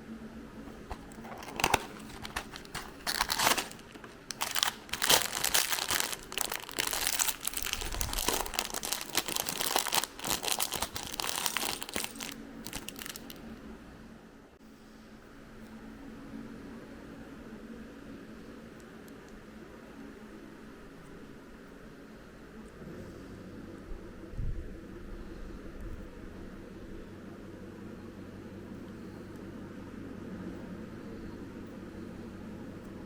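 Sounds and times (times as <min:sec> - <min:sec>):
packaging crinkling and tearing: 0:00.7 - 0:13.5.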